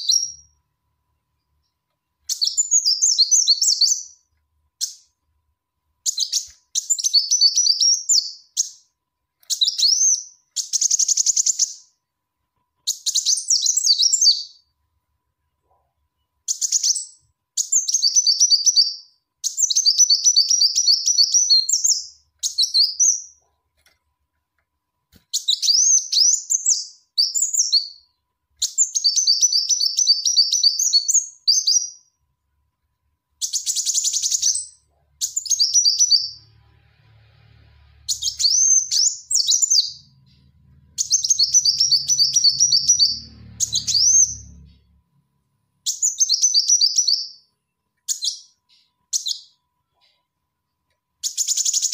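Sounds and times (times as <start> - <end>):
sunbird twittering: 38.1 - 44.7.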